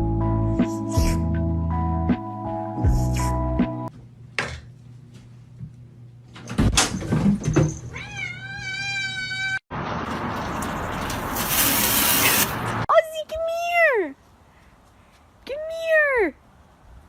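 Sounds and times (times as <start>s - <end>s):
cat meowing: 7.9s - 9.6s.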